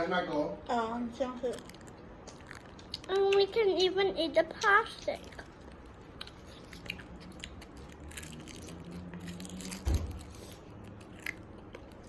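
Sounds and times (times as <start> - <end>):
person chewing crunchy candy: 1.4 - 3.6, 5.1 - 12.0.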